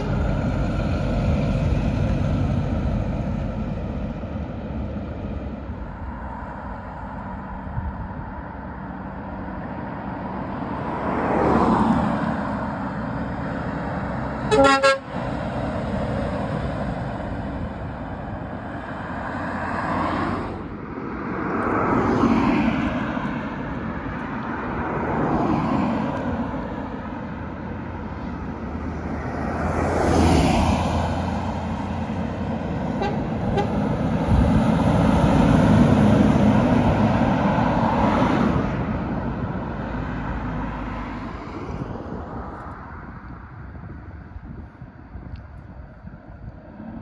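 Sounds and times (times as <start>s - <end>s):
heavy trucks driving past: 0.0s - 45.2s
truck horns honking: 14.4s - 15.4s, 32.9s - 34.1s.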